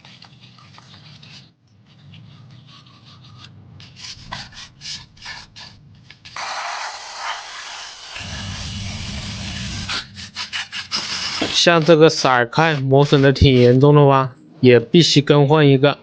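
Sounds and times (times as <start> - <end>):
rubbing and scraping strokes: 0.0 - 14.0
loud steady hiss: 4.8 - 11.6.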